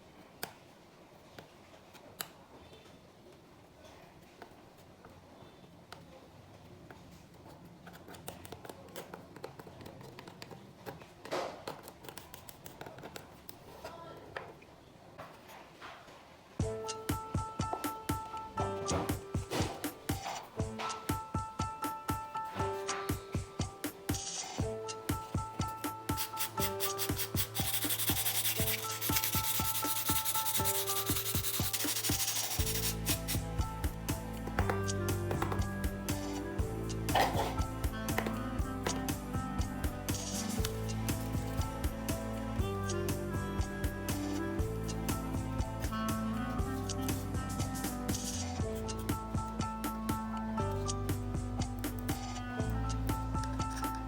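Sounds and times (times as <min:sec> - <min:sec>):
background music with beat: 0:16.6 - 0:54.0
sanding on plastic: 0:26.1 - 0:33.4.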